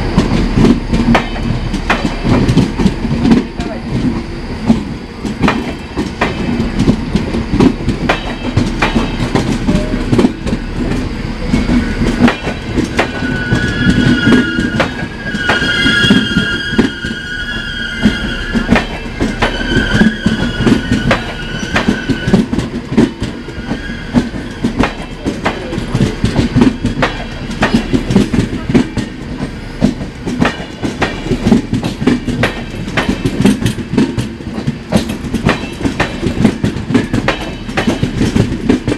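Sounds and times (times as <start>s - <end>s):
train rumble: 0.0s - 38.9s
train wheels clicking over rail joints: 0.0s - 38.9s
high wheel squeal: 12.9s - 22.6s, 23.3s - 24.8s.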